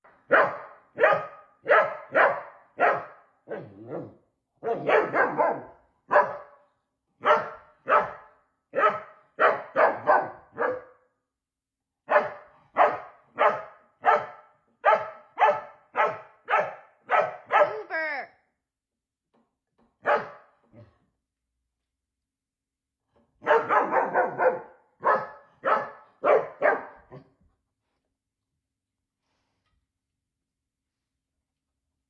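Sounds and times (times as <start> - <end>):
dog barking: 0.1 - 11.1, 12.1 - 17.9, 20.0 - 20.6, 23.4 - 27.3.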